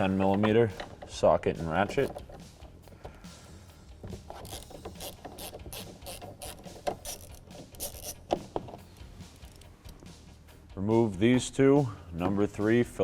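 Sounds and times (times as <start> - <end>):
hand ratchet clicking: 1.8 - 2.5, 4.2 - 10.1.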